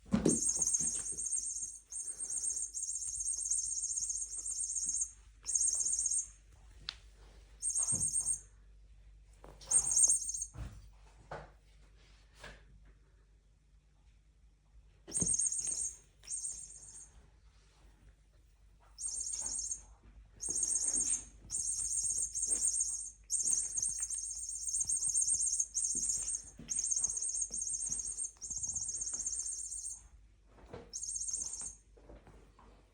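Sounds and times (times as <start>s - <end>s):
electronic bird chirps: 0.3s - 6.3s, 7.6s - 8.4s, 9.7s - 10.5s, 15.1s - 17.0s, 19.0s - 19.8s, 20.4s - 30.0s, 31.0s - 31.8s.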